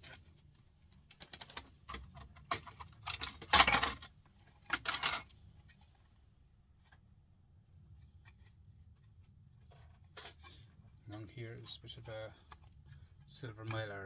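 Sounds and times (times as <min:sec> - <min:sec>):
printer parts clicking and rattling: 0:00.9 - 0:05.8.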